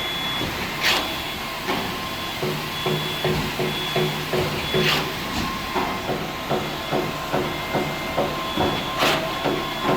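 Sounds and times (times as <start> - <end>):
concrete pump truck running: 0.0 - 9.9
rhythmic knocking: 5.7 - 8.8.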